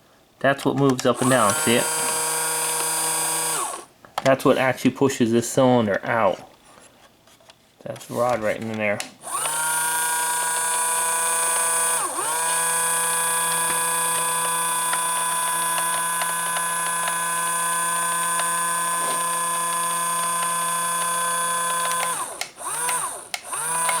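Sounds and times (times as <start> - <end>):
electric motor whining: 1.2 - 3.9, 9.2 - 24.0.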